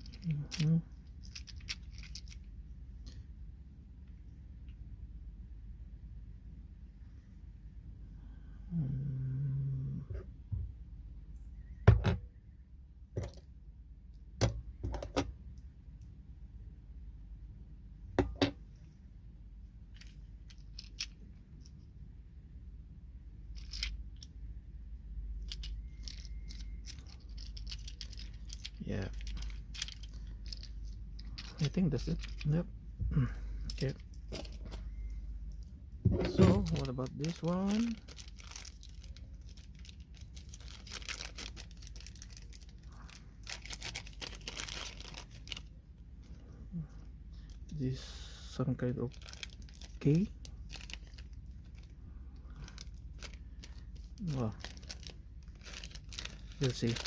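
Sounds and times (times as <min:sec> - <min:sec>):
plastic packaging crinkling: 0:00.0 - 0:02.5, 0:25.4 - 0:32.6, 0:33.7 - 0:35.6, 0:36.4 - 0:45.7, 0:48.8 - 0:57.0
small plastic parts clicking: 0:00.0 - 0:03.2, 0:19.9 - 0:21.8, 0:23.5 - 0:24.3, 0:25.4 - 0:32.6
rustling: 0:25.4 - 0:57.0.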